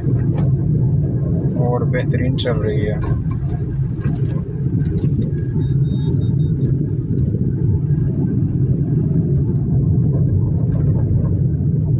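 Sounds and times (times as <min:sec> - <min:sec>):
car engine and road noise: 0:00.0 - 0:11.9.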